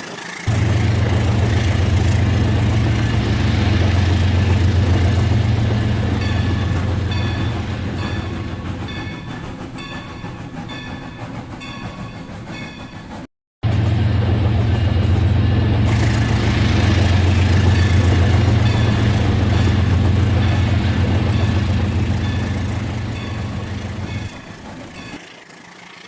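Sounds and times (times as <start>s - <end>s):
toy train motor rumbling: 15.9s - 26.0s.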